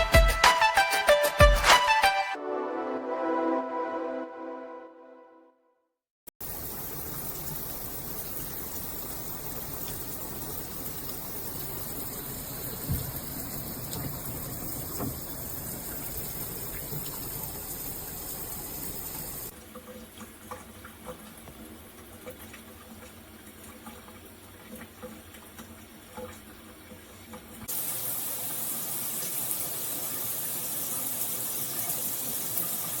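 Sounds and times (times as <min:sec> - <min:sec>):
shower head spraying water: 0:06.4 - 0:19.5.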